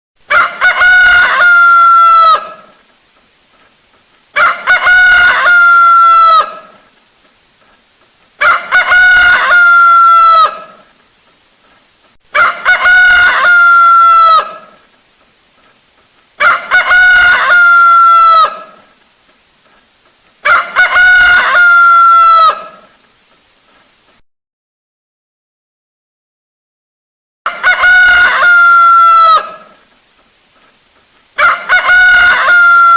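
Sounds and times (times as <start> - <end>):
rooster crowing: 0.3 - 2.8, 4.4 - 6.9, 8.4 - 10.9, 12.3 - 14.9, 16.4 - 19.0, 20.4 - 23.0, 27.5 - 29.9, 31.4 - 32.9.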